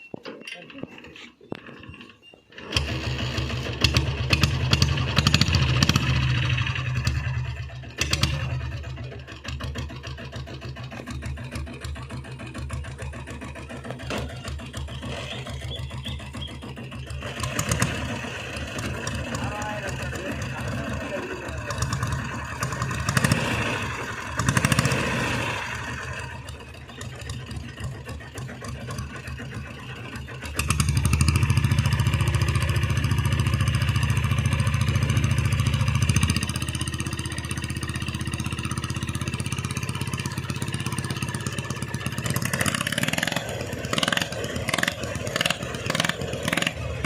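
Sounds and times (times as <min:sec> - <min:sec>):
motorcycle engine thumping: 0:11.0 - 0:20.9.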